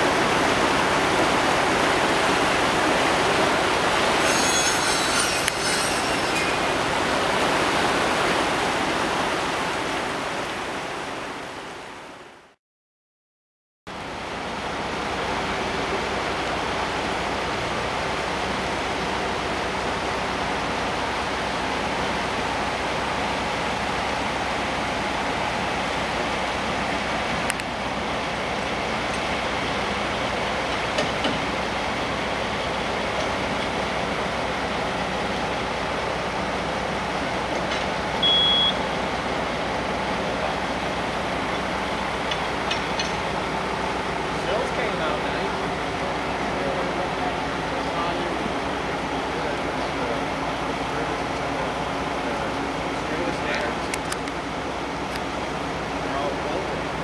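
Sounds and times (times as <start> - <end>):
large engine running: 13.9 - 57.0
short high beep: 38.2 - 39.0.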